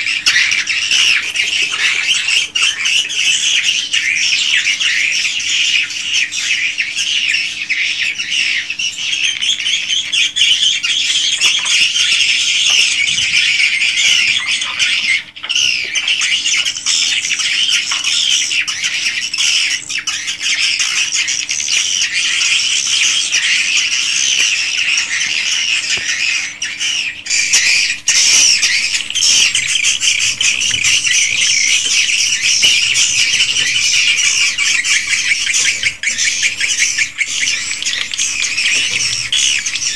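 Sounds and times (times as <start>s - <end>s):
swiftlets twittering: 22.0s - 39.9s.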